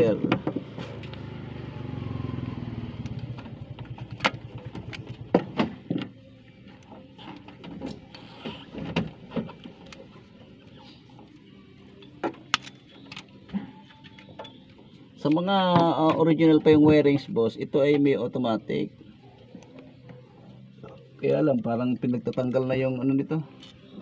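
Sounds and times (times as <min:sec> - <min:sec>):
engine running: 0:00.0 - 0:08.2
sharp clicks and knocks: 0:03.0 - 0:06.1.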